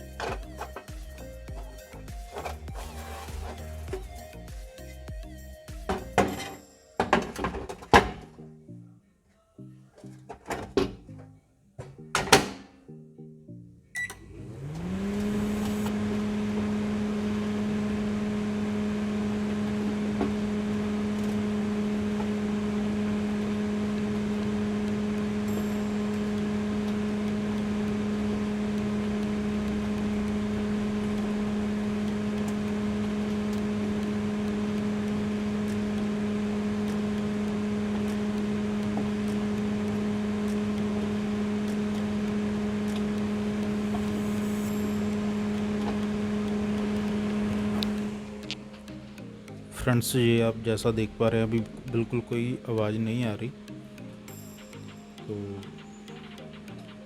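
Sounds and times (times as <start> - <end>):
microwave oven clicks: 12.2 - 12.8
microwave oven humming: 14.0 - 54.6.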